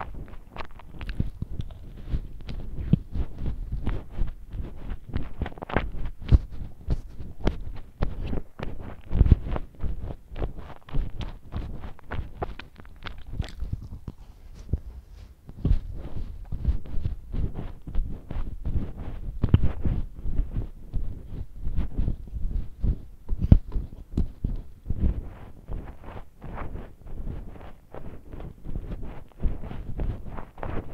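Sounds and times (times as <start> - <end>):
person chewing donuts: 0.0 - 21.2.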